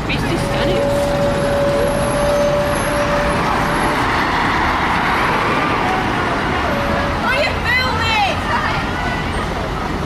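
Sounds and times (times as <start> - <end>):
steady high whine: 0.0 - 4.8
bus engine and road noise: 0.0 - 10.0.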